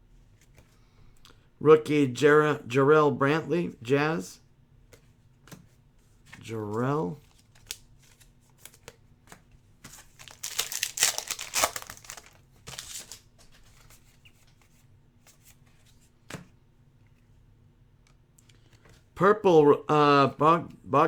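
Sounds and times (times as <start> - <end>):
cards clicking and tapping: 7.5 - 13.1
wrapper tearing and crinkling: 10.1 - 13.3.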